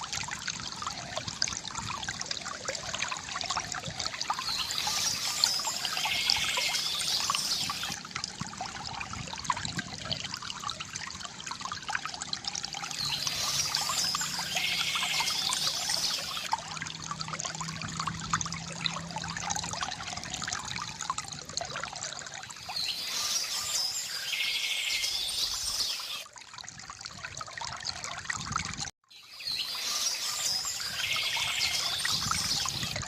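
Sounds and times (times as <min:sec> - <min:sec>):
water pouring from fountain spout: 0:00.0 - 0:33.0
bird singing: 0:04.4 - 0:08.0, 0:13.0 - 0:16.5, 0:22.7 - 0:26.2, 0:29.1 - 0:33.0.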